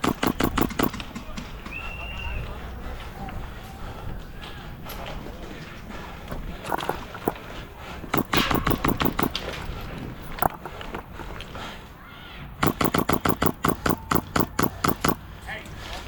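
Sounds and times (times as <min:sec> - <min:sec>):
airsoft guns firing bursts: 0:00.0 - 0:02.0, 0:06.6 - 0:11.2, 0:12.6 - 0:15.4.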